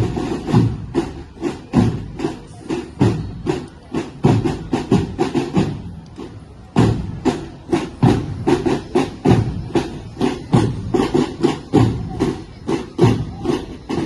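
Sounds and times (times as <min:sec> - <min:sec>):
rhythmic percussive thumps: 0:00.0 - 0:14.0.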